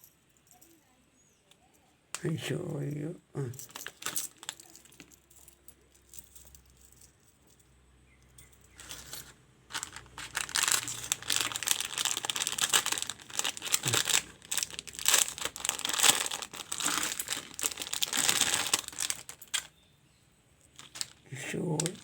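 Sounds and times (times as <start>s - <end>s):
packaging crinkling and tearing: 3.7s - 4.7s, 8.8s - 19.8s, 20.7s - 22.0s.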